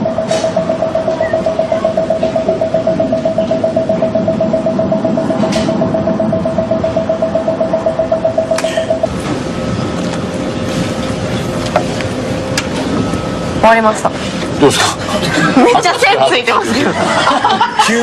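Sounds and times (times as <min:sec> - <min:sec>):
electronic tone beeping in pulses: 0:00.0 - 0:11.6.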